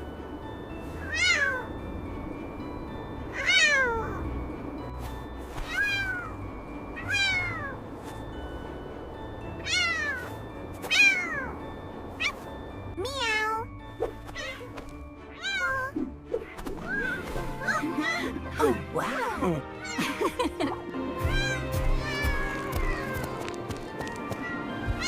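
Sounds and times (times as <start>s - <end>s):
soft background music: 0.0s - 25.0s
kitten meowing: 5.7s - 6.4s, 13.0s - 13.7s, 15.4s - 16.0s, 21.3s - 23.3s.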